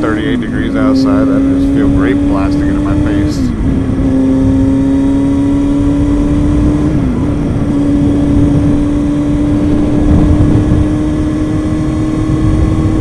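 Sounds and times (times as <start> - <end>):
motorcycle engine running: 0.0 - 13.0
wind buffeting microphone: 0.0 - 13.0.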